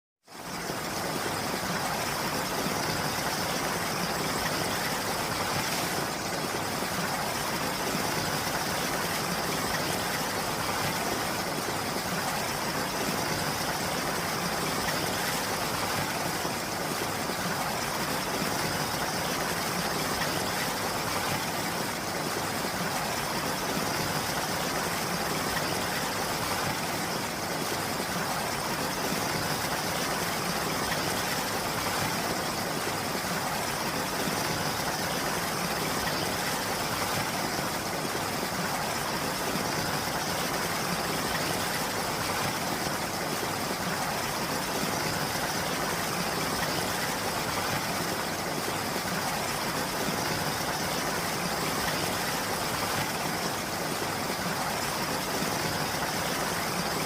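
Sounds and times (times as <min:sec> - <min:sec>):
steady rain falling: 0:00.2 - 0:57.0.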